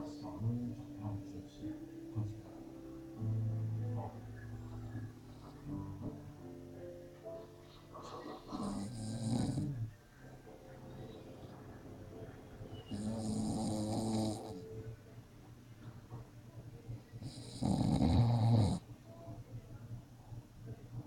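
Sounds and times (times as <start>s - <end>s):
man snoring: 8.5s - 9.8s, 12.9s - 14.6s, 17.2s - 18.8s.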